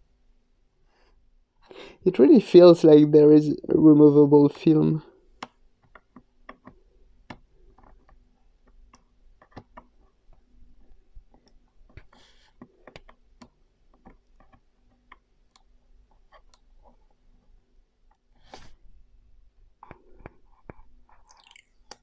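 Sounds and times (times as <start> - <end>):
fingernail scratching plastic touchpad: 5.8 - 15.2.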